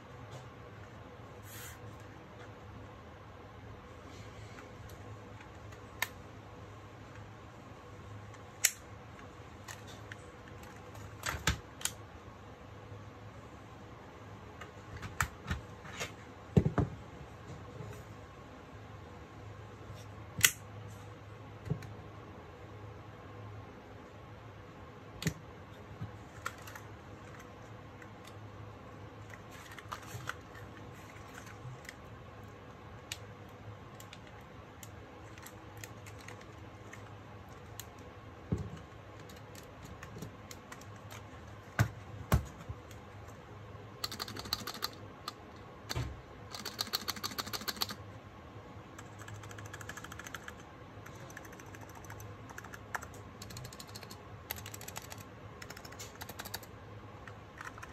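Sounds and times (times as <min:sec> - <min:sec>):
keyboard typing: 0:26.3 - 0:28.4, 0:33.9 - 0:38.0, 0:38.8 - 0:41.4, 0:44.0 - 0:48.0, 0:49.0 - 0:57.9.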